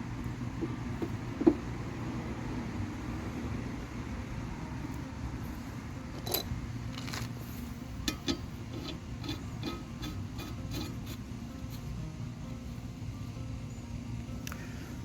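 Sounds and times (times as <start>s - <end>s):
hand tools clicking on metal: 8.0s - 11.8s.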